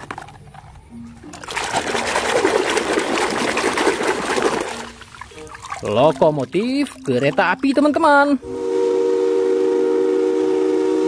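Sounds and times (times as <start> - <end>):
water splashing and sloshing: 0.0 - 8.4.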